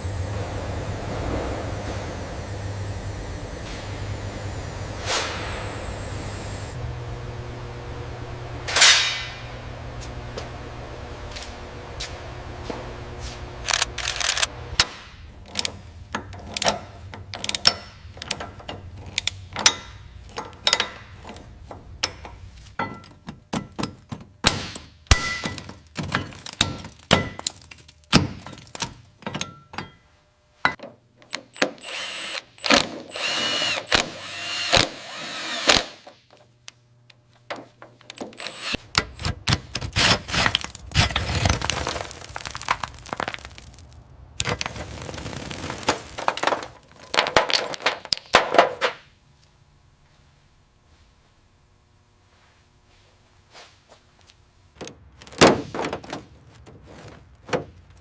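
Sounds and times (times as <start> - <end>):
tools knocking and clanking: 14.8 - 31.9, 37.5 - 40.6, 46.3 - 49.1
power tool whine: 31.5 - 36.0, 38.2 - 39.0.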